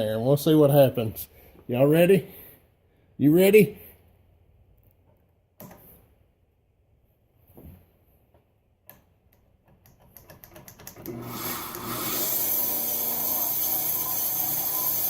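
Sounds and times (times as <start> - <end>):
bandsaw motor running: 11.0 - 15.0.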